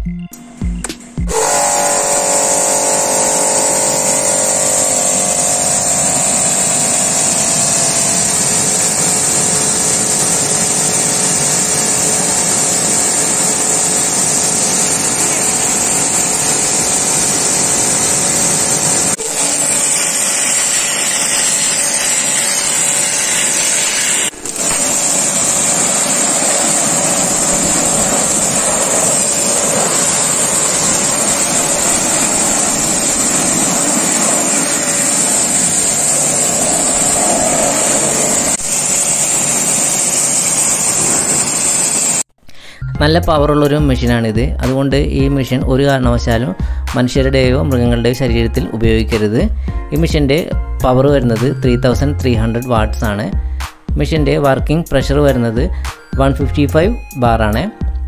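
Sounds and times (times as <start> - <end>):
pressure washer motor running: 1.2 - 42.3
hissing water jet: 1.3 - 42.3.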